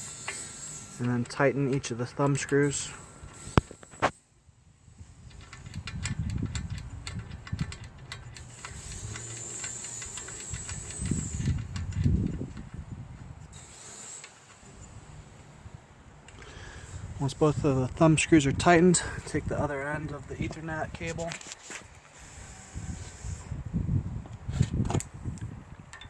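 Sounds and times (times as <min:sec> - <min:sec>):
steady hiss: 0:00.0 - 0:05.2
rubbing and handling noise: 0:05.3 - 0:12.8, 0:16.3 - 0:23.5
small clicks of thumb screws: 0:05.3 - 0:12.8.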